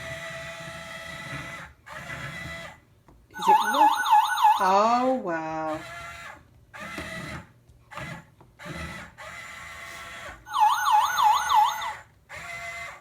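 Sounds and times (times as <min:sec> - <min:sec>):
toy robot buzzy beeps: 0:03.4 - 0:04.7, 0:10.5 - 0:12.0
siren-like electronic warble: 0:10.5 - 0:12.0.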